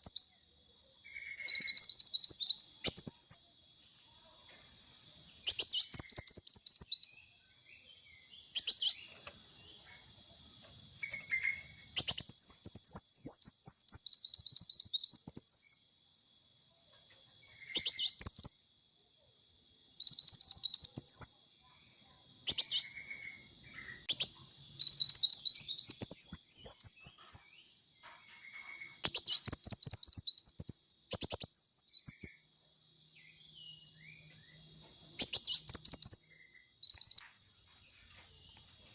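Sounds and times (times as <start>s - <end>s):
bird twittering: 1.1s - 3.4s, 5.4s - 7.3s, 8.3s - 9.3s, 11.0s - 15.8s, 17.4s - 18.5s, 20.0s - 21.3s, 22.5s - 27.6s, 28.4s - 32.5s, 35.2s - 37.3s.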